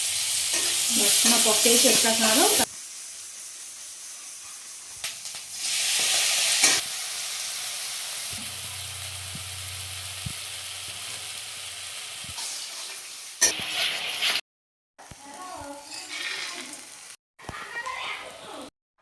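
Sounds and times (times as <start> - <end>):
garlic sizzling in hot oil: 0.0 - 14.4, 15.0 - 17.2
low hum: 8.4 - 11.0.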